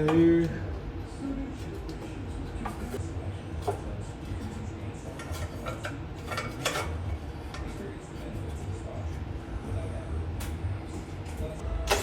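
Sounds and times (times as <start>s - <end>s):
clinks and scrapes of tools: 3.6s - 8.6s.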